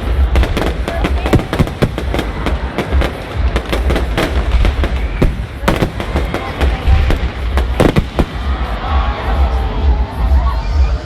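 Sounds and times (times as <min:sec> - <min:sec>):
fireworks bangs and pops: 0:00.0 - 0:08.8
low rumble: 0:00.0 - 0:11.0.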